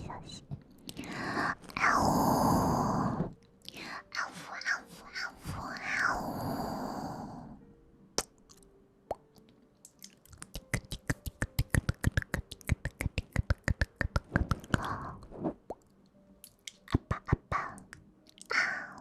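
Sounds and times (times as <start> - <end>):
breathy exhale: 6.0 - 7.6
wet mouth clicks and pops: 8.2 - 15.0, 15.7 - 18.6.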